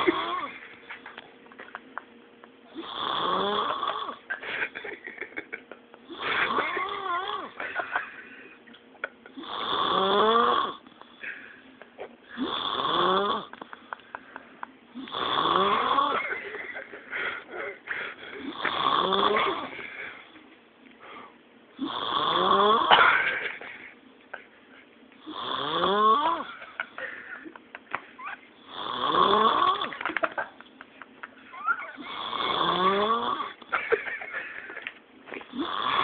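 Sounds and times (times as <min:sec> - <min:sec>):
man snoring loudly: 0:00.0 - 0:00.6, 0:02.7 - 0:04.2, 0:06.1 - 0:07.6, 0:09.4 - 0:10.8, 0:12.4 - 0:13.6, 0:15.0 - 0:16.2, 0:18.4 - 0:19.8, 0:21.8 - 0:22.9, 0:25.2 - 0:26.5, 0:28.6 - 0:30.0, 0:32.0 - 0:33.6, 0:35.5 - 0:36.0.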